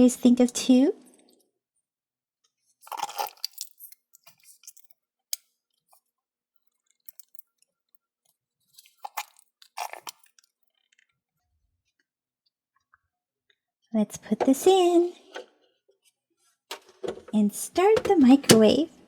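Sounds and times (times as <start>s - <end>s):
slime squelching: 2.7s - 5.0s, 8.3s - 11.2s.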